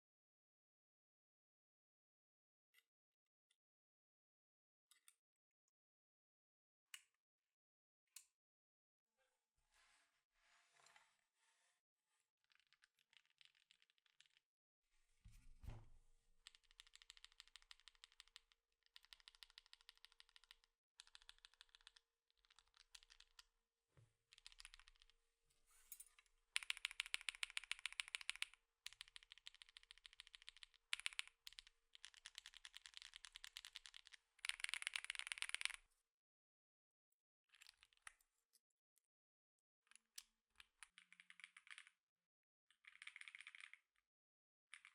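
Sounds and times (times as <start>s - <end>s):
mechanical keyboard typing: 26.6s - 35.8s.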